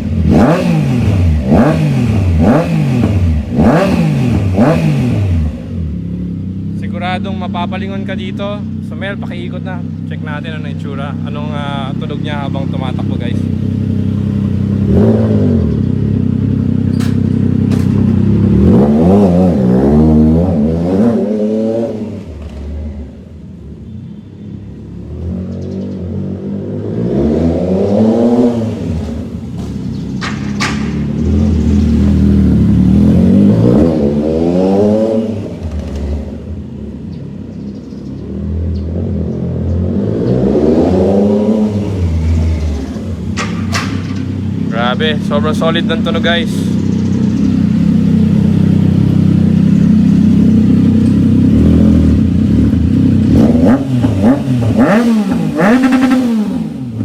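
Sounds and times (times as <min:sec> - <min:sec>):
motorcycle engine accelerating: 0:00.0 - 0:24.2, 0:24.9 - 0:57.0.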